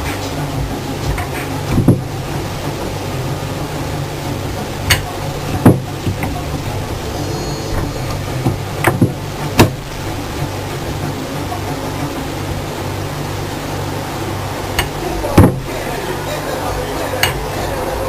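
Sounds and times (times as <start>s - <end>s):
sharp knocks: 0.0s - 2.5s, 4.9s - 7.0s, 7.7s - 10.0s
low machine hum: 0.0s - 18.0s.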